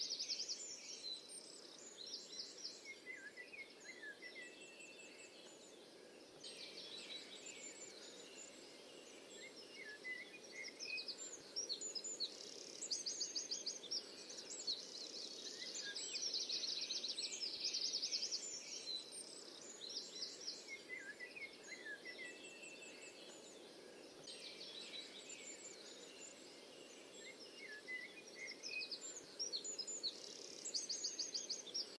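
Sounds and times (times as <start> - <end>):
low background hiss: 0.0 - 32.0
songbirds trilling and chirping: 0.0 - 32.0.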